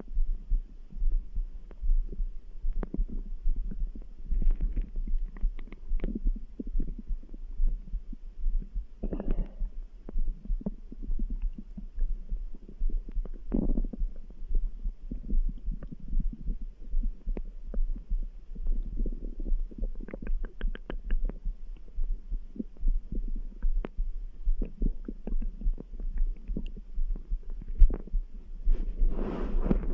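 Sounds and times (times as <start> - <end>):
stomach gurgling: 0.0 - 29.9
throbbing heartbeat: 0.0 - 29.9
small bubbly pops: 19.9 - 21.4.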